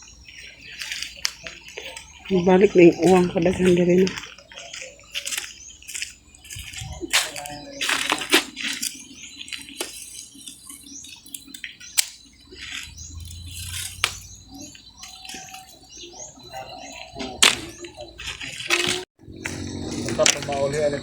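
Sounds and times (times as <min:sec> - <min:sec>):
water splashing and sloshing: 0:00.2 - 0:15.6.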